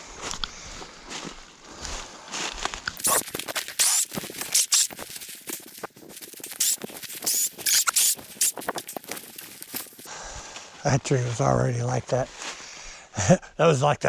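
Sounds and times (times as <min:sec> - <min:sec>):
scratching and crackling noises: 0:03.0 - 0:10.1.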